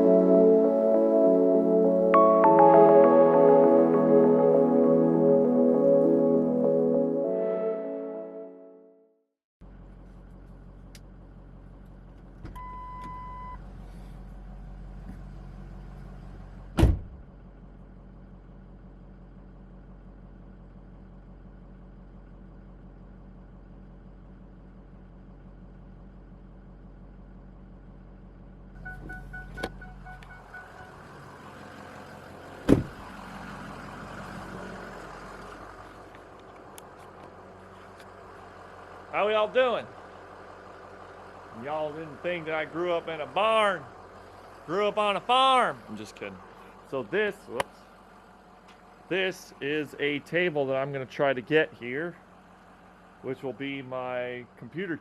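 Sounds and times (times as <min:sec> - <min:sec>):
vehicle engine hum: 0:00.0 - 0:07.7, 0:09.6 - 0:55.0
warning chime: 0:00.0 - 0:08.5
car door thudding shut: 0:16.8 - 0:17.2, 0:32.6 - 0:33.1.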